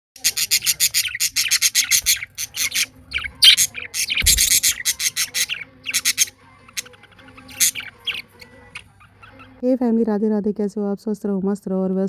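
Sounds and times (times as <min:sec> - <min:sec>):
budgerigars chirping: 0:00.2 - 0:09.6.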